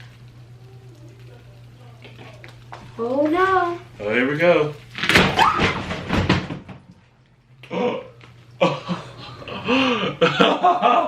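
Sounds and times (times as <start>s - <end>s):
sharp crackling noises: 0.0s - 5.6s.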